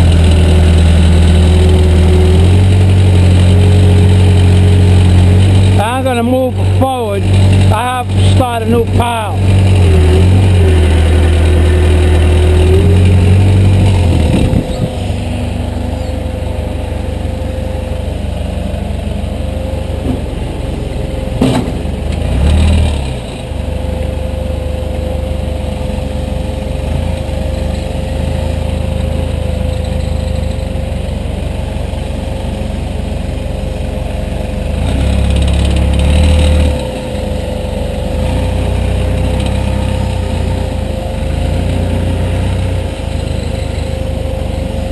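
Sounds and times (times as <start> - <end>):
steady whine: 0.0 - 22.2
diesel engine running: 0.0 - 44.9
sharp knock: 21.4 - 22.0.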